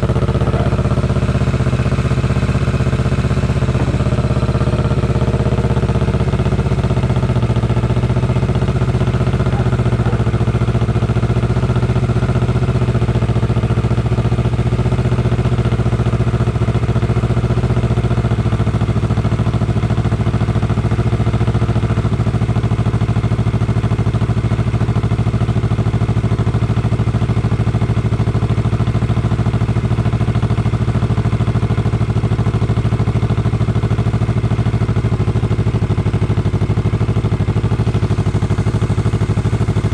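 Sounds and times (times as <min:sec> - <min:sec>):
motorcycle engine idling: 0:00.0 - 0:39.9.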